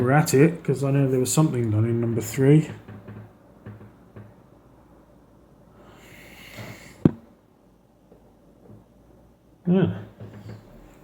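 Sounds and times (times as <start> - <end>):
person breathing out through nose: 5.8 - 7.1.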